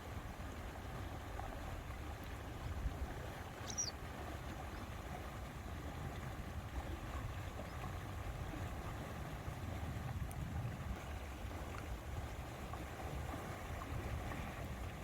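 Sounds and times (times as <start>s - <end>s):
wind rumble on microphone: 0.0s - 15.0s
bird chirp: 3.6s - 4.0s.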